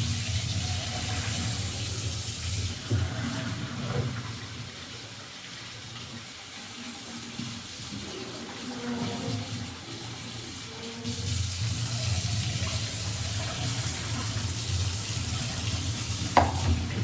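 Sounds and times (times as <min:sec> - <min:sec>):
tap water running into sink: 0:00.0 - 0:17.0
short knocks: 0:16.4 - 0:16.9.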